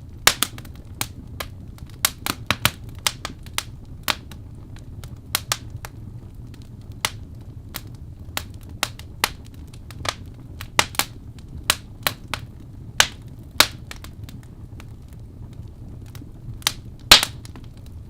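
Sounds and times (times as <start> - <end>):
low rumble of flames: 0.0 - 18.0
wood fire crackling: 0.0 - 18.0
logs popping and snapping: 0.2 - 4.4, 8.4 - 14.1, 16.6 - 17.8.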